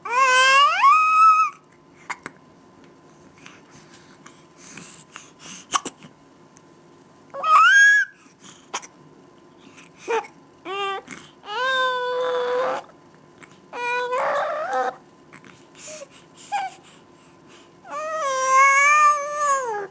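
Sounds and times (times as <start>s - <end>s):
long high-pitched cries: 0.0s - 1.6s, 7.4s - 8.2s.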